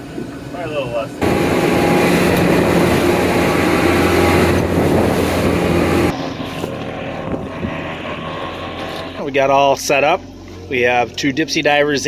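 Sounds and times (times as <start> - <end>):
motorboat engine running: 0.0 - 12.0
wind on microphone: 1.2 - 9.2.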